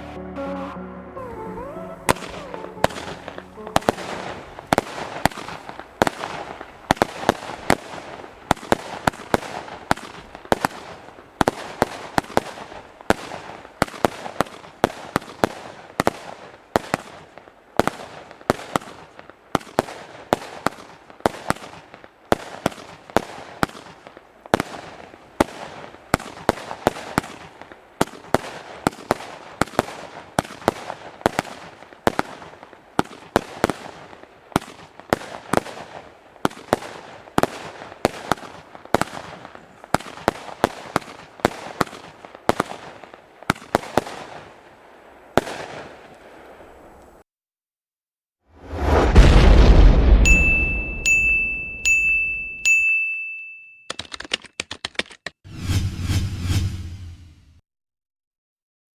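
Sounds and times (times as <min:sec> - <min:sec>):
firework launch reports: 0:01.2 - 0:14.0, 0:48.6 - 0:51.8.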